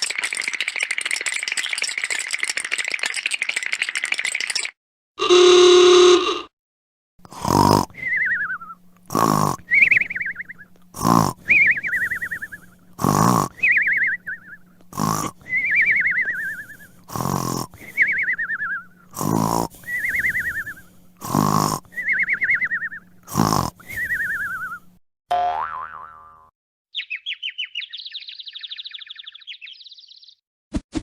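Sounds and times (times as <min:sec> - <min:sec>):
cartoon snoring: 0:05.2 - 0:06.5, 0:07.2 - 0:10.2, 0:10.9 - 0:14.1, 0:14.9 - 0:18.2, 0:19.1 - 0:24.8.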